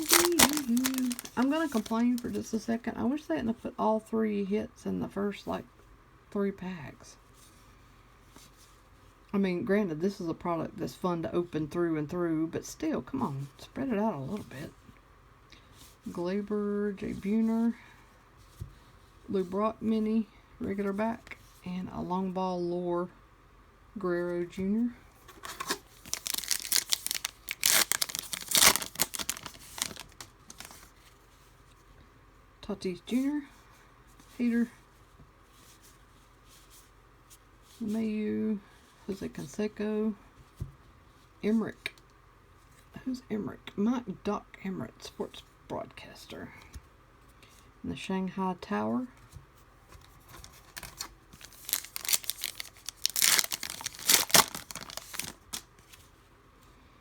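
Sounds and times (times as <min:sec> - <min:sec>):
wrapper tearing and crinkling: 0:00.0 - 0:02.5, 0:25.5 - 0:30.9, 0:50.3 - 0:55.7.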